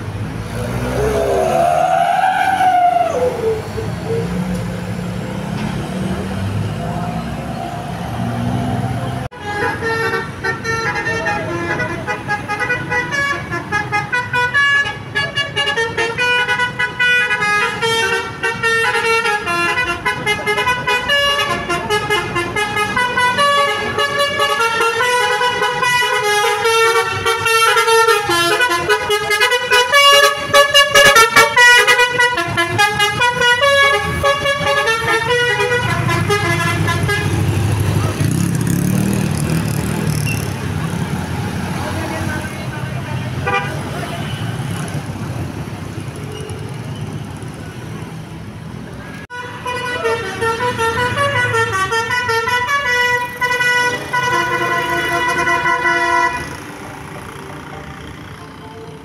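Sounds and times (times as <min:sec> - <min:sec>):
musical horn playing melody: 0:09.3 - 0:37.7.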